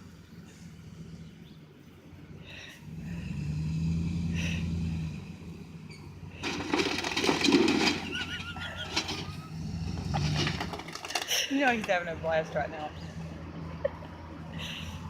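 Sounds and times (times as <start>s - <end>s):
vehicle engine running: 0.0s - 15.0s
microwave crushed and breaking: 6.4s - 9.4s, 10.0s - 11.4s.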